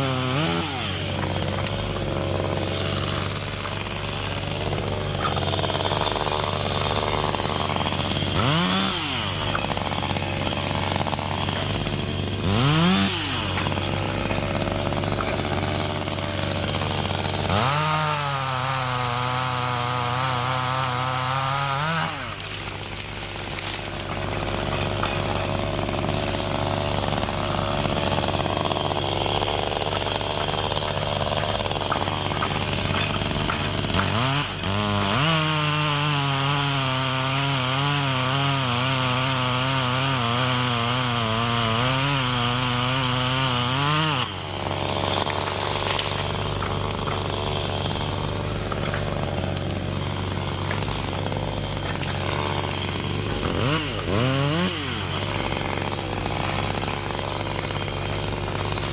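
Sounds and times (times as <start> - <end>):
chainsaw cutting wood: 0.0 - 58.9
chainsaw idling and revving: 0.0 - 58.9.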